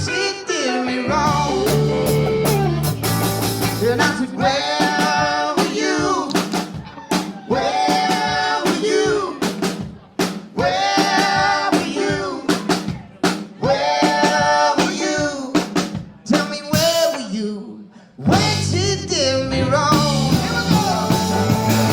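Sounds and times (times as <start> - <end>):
live rock band: 0.0 - 17.3, 18.2 - 21.9
drum kit hits: 1.3 - 16.1, 19.9 - 21.9.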